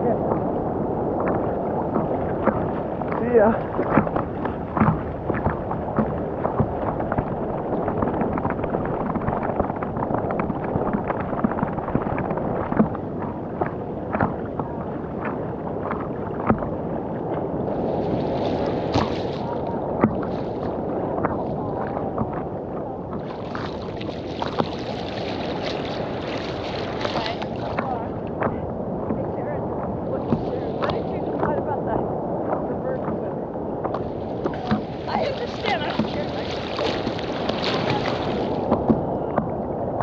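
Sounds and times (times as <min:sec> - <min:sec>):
water sloshing and splashing: 0:00.0 - 0:40.0.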